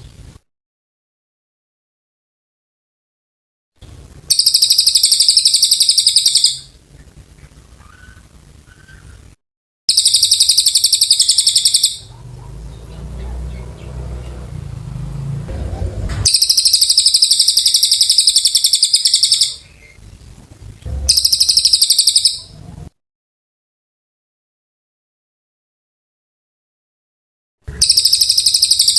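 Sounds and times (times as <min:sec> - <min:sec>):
bird singing rapid trills: 0:04.3 - 0:06.7, 0:09.9 - 0:15.4, 0:16.2 - 0:20.0, 0:20.9 - 0:22.6, 0:27.8 - 0:28.9
low rumble: 0:12.1 - 0:16.5, 0:20.0 - 0:21.7.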